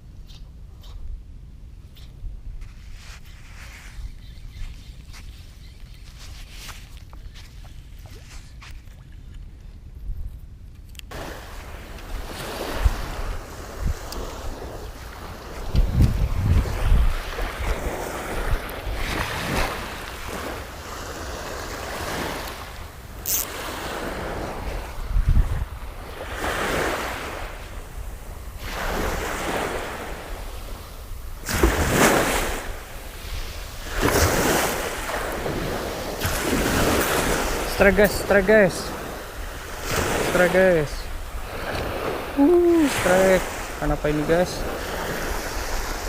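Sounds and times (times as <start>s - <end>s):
wind rumbling on microphone: 0.0s - 38.0s
waves washing in: 11.1s - 46.0s.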